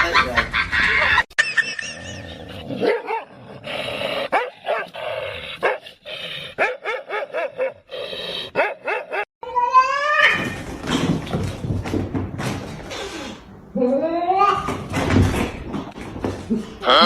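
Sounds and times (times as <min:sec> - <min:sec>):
dog barking and yipping: 0:02.8 - 0:03.3, 0:04.3 - 0:04.9, 0:06.6 - 0:07.9, 0:08.5 - 0:09.3.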